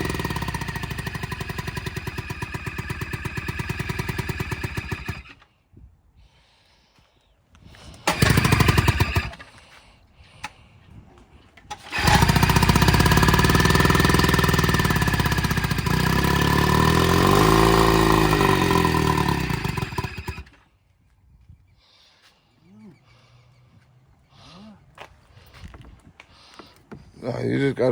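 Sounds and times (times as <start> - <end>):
outboard motor starting and revving: 0.0 - 5.4, 8.0 - 9.4, 11.6 - 20.6.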